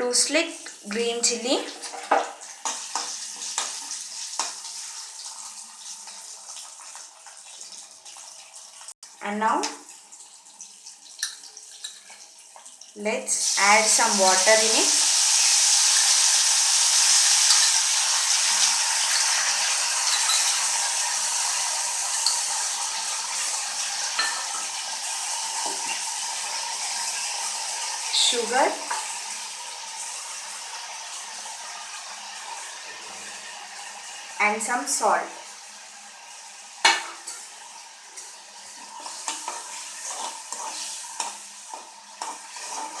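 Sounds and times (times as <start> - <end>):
hot oil sizzling: 0.0 - 43.0
spoon scraping a pot: 17.1 - 18.0, 19.0 - 20.8, 38.8 - 43.0
spoon clinking in pan: 17.4 - 17.9, 19.1 - 20.8, 24.1 - 24.8.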